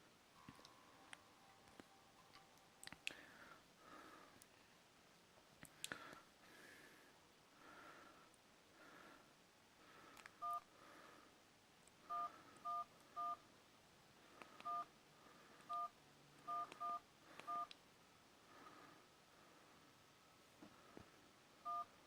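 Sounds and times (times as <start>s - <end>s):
keypad two-tone beeps: 10.4s - 10.6s, 14.6s - 14.9s, 15.7s - 15.9s, 21.7s - 21.9s.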